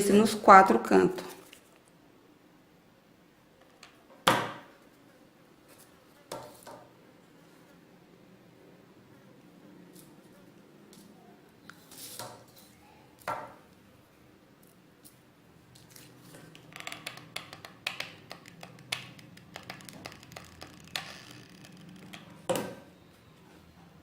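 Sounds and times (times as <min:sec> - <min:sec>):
small clicks taps and rustles: 0:15.8 - 0:22.4.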